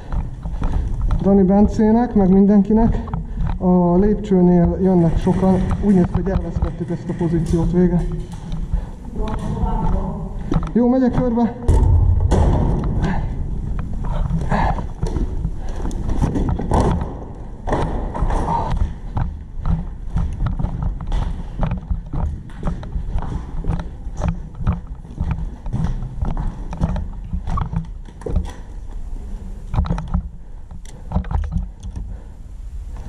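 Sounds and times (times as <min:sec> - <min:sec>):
gear knocking and rustling: 0:00.0 - 0:32.3
footsteps: 0:00.0 - 0:33.0.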